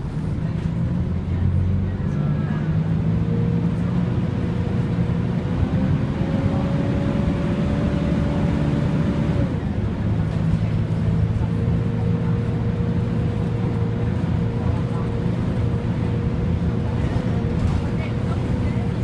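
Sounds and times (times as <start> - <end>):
bus diesel engine drone: 0.0 - 19.0.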